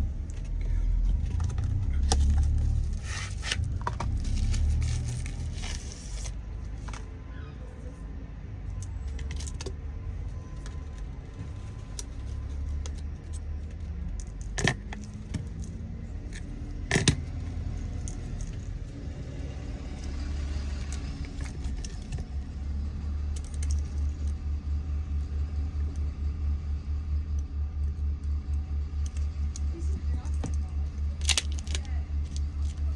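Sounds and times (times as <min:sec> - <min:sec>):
low hum: 0:00.0 - 0:32.9
clicks of tools and parts handled: 0:08.7 - 0:09.8.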